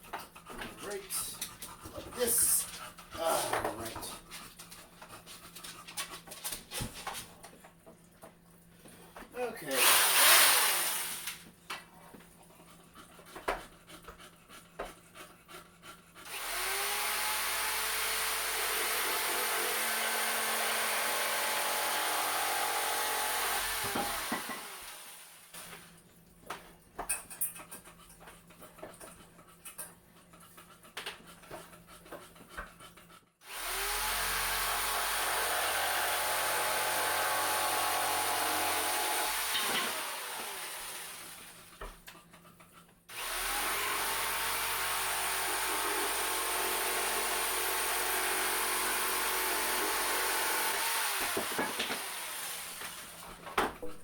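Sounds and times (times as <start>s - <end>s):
electric power tool running: 9.7s - 11.4s, 16.3s - 25.4s, 33.5s - 41.6s, 43.1s - 53.2s.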